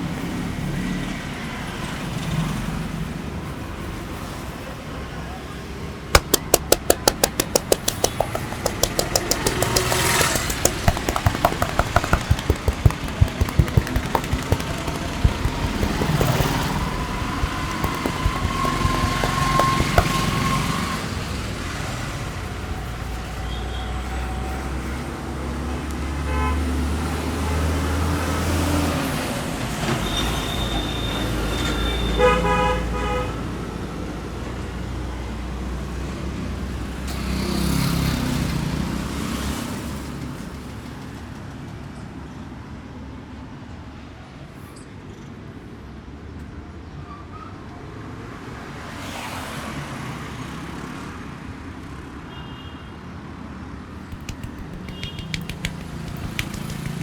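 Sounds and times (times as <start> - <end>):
quick sharp taps: 6.2 - 20.4, 54.1 - 57.0
road traffic: 6.2 - 21.5, 54.1 - 57.0.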